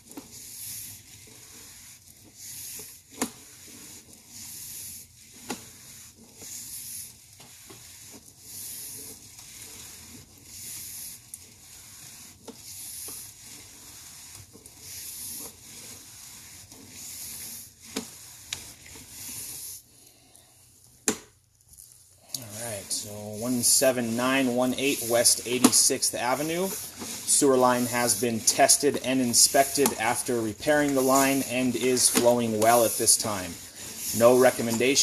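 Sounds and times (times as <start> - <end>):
push cable rasping: 22.4 - 35.0.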